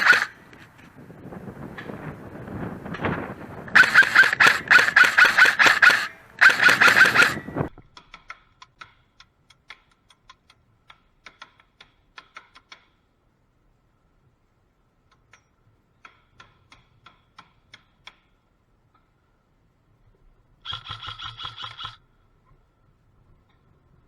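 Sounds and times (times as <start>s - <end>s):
airsoft gun full-auto bursts: 0.0s - 0.4s, 3.7s - 7.6s, 20.6s - 22.0s.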